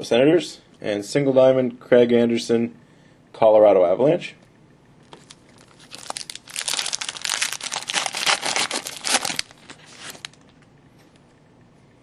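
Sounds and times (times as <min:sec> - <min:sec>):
foil wrapper tearing and crinkling: 0:05.2 - 0:10.5.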